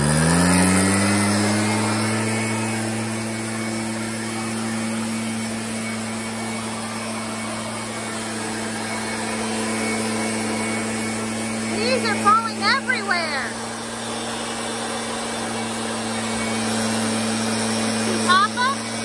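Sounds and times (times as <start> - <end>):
leaf blower running: 0.0 - 19.0.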